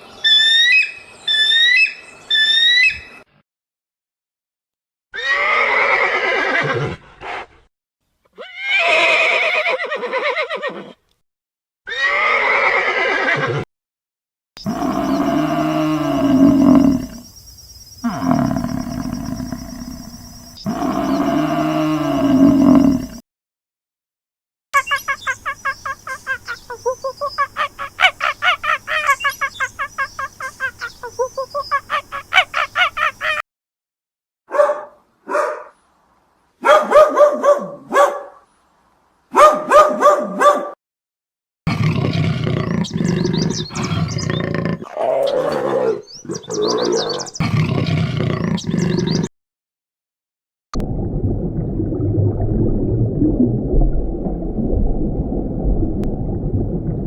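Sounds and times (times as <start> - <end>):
horse whinnying: 5.2 - 7.4, 8.4 - 11.0, 11.9 - 13.7.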